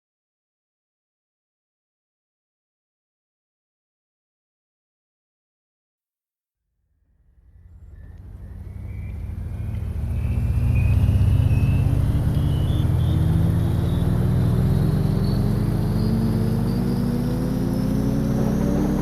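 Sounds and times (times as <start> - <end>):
motor engine speeding up: 7.3 - 19.0.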